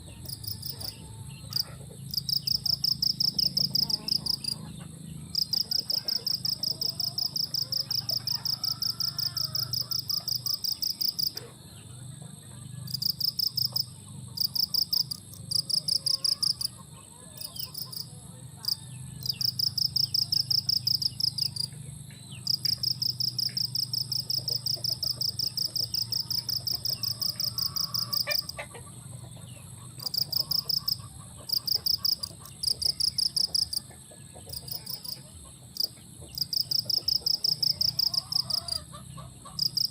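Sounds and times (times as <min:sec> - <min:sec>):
insect chirping in pulses: 0:01.6 - 0:04.6, 0:05.3 - 0:11.3, 0:22.5 - 0:28.6.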